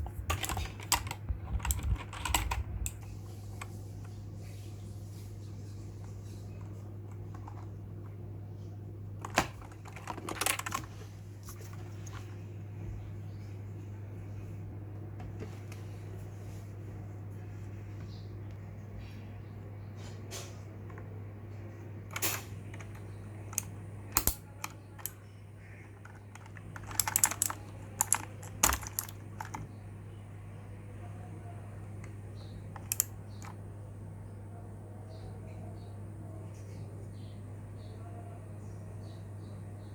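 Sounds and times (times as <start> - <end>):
mechanical keyboard keys clicking: 0.0 - 3.7, 9.2 - 11.0, 22.1 - 25.2, 25.9 - 29.7, 32.0 - 33.6
steady low hum: 0.0 - 39.9.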